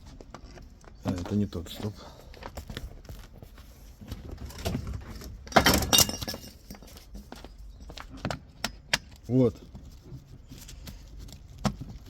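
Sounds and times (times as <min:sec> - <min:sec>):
metal parts clinking on workbench: 0:05.6 - 0:06.8.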